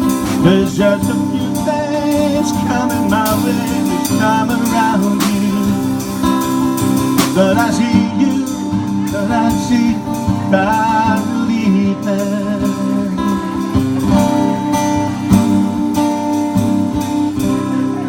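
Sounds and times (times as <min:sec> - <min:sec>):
wordless vocal: 0:00.0 - 0:13.6
acoustic guitar: 0:00.0 - 0:18.0.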